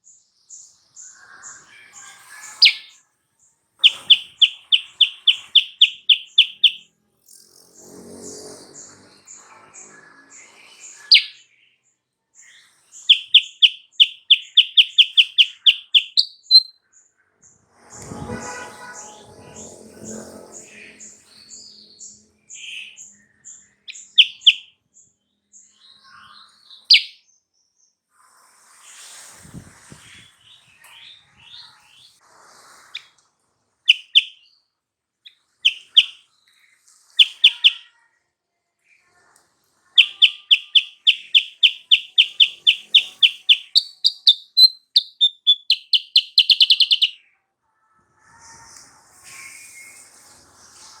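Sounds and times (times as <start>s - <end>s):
bird singing: 0.0s - 3.0s, 3.8s - 6.8s, 8.8s - 11.8s, 12.6s - 16.9s, 18.4s - 24.7s, 25.6s - 27.3s, 33.9s - 34.4s, 35.3s - 36.2s, 37.2s - 37.9s, 40.0s - 47.2s
sharp bird chirps: 2.4s - 3.0s, 3.8s - 6.8s, 10.9s - 11.6s, 13.0s - 16.8s, 23.8s - 24.7s, 26.8s - 27.2s, 33.9s - 34.4s, 35.3s - 36.2s, 37.2s - 37.9s, 40.0s - 47.3s.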